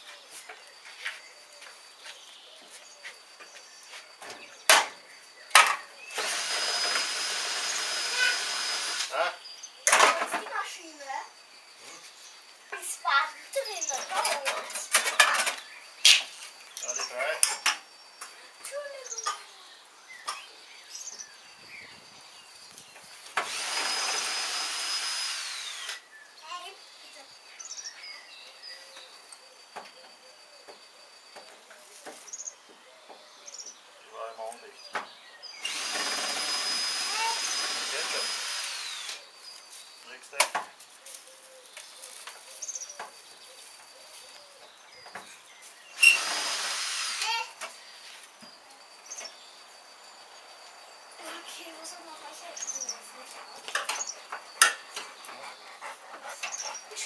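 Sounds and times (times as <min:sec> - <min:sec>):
cordless drill backing out screw: 0:06.1 - 0:09.1, 0:23.4 - 0:26.0, 0:35.6 - 0:39.2, 0:46.0 - 0:47.4
electric motor whining: 0:06.1 - 0:09.1, 0:23.4 - 0:26.0, 0:35.6 - 0:39.2.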